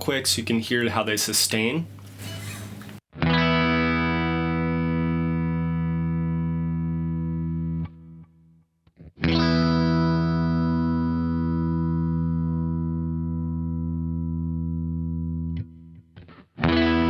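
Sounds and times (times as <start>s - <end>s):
distorted electric guitar chord: 9.3s - 15.5s.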